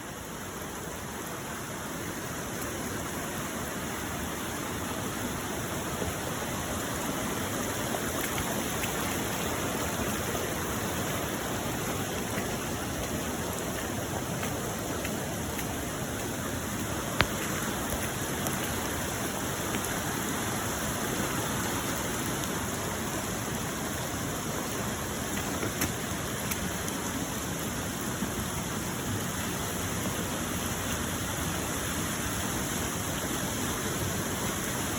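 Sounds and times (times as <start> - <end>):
floodwater rushing: 0.1 - 34.9.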